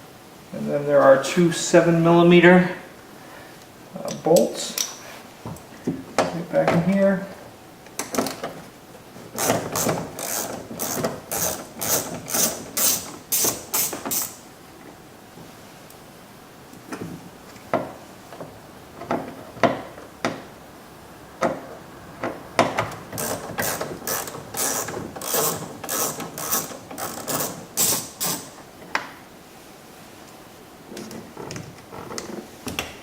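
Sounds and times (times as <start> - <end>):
ratchet clicking: 9.4 - 14.4, 23.2 - 28.5.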